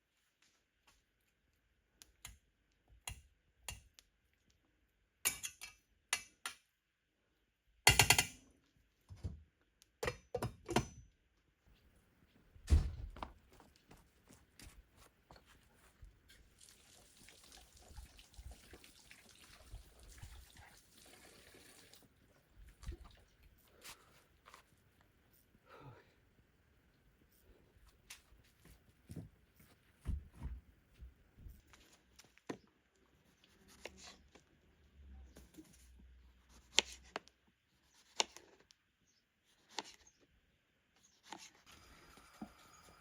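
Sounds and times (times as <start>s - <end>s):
heavy thunk: 12.7s - 13.3s
water running: 15.8s - 23.8s.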